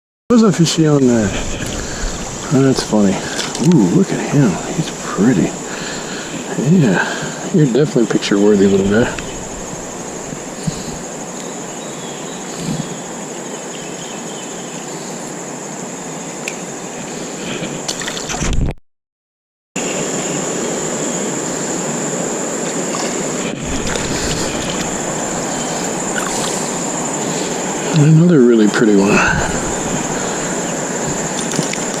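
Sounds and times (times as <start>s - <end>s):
river water rushing: 0.8s - 13.7s, 19.8s - 32.0s
high-pitched insect drone: 0.8s - 18.3s, 19.8s - 32.0s.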